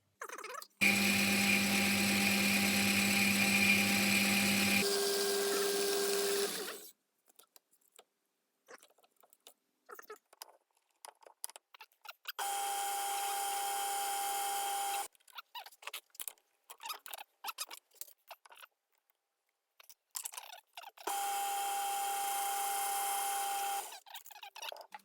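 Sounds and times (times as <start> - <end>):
metal lathe cutting with whine: 0.8 - 6.8, 12.4 - 15.1, 21.1 - 23.9.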